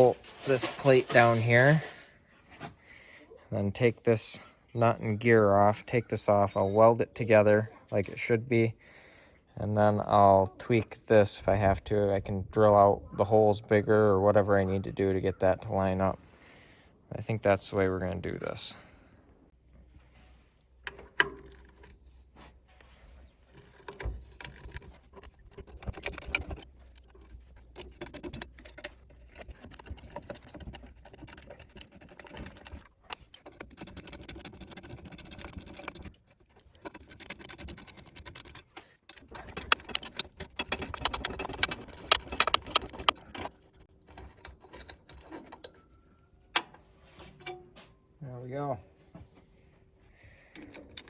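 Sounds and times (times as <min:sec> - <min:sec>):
wrench clicking and clinking on metal: 0:20.8 - 0:22.2, 0:23.5 - 0:47.7, 0:50.4 - 0:51.0.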